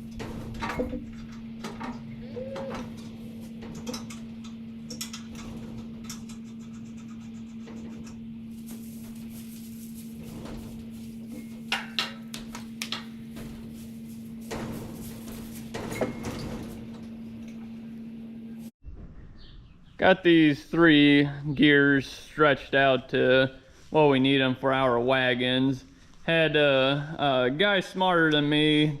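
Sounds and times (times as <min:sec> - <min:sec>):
steady hum: 0:00.0 - 0:18.7.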